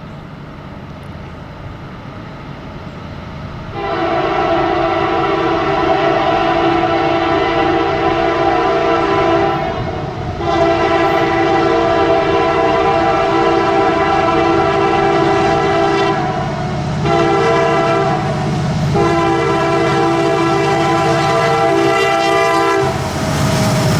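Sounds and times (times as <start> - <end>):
locomotive air horn blasts: 3.7 - 23.1.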